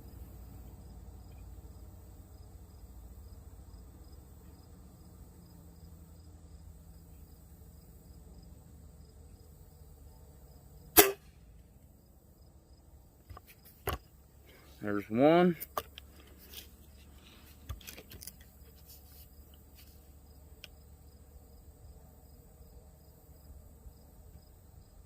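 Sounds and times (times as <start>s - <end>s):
faint low hum: 0.0s - 25.0s
air rifle shot: 11.0s - 11.4s.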